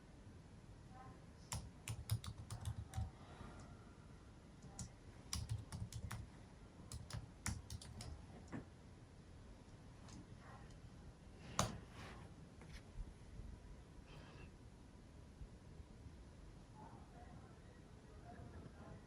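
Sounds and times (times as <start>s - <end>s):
typing on computer keyboard: 1.5s - 3.2s, 4.6s - 6.3s, 6.9s - 8.3s.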